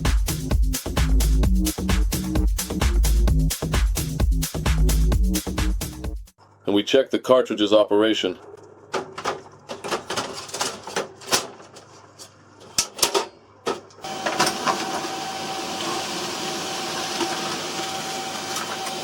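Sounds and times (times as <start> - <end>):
laser printer whirring: 14.0 - 19.0.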